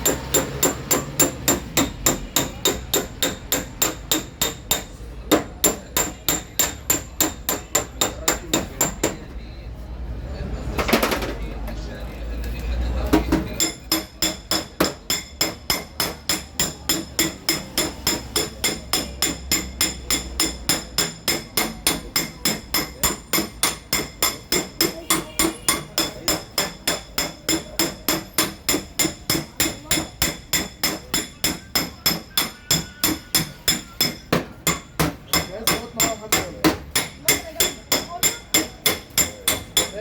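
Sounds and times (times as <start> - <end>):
light hammer tapping sheet metal: 13.2 - 40.0.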